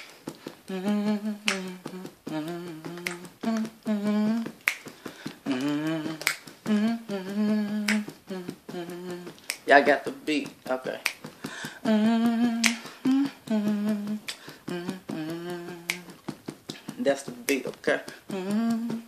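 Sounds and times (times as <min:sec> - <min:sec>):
person humming a tune: 0:00.3 - 0:04.7, 0:05.3 - 0:09.6, 0:11.8 - 0:19.0
finger snaps: 0:01.4 - 0:03.8, 0:04.4 - 0:09.7, 0:11.0 - 0:19.0.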